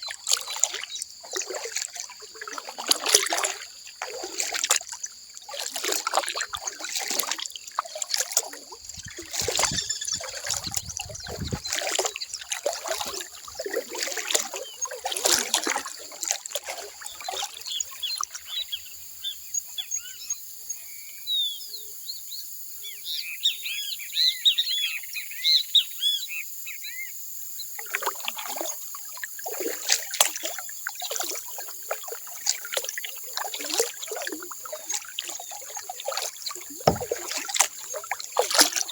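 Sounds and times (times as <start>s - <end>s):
paddle splashing water: 0.0s - 18.4s, 29.4s - 38.9s
birds chirping: 9.0s - 11.9s.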